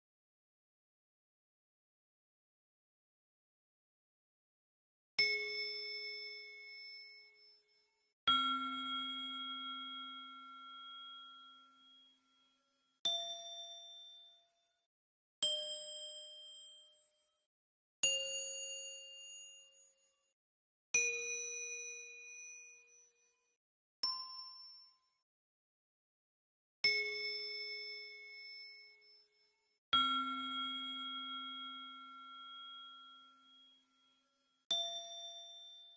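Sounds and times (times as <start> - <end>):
bell dings: 24.0 - 25.2.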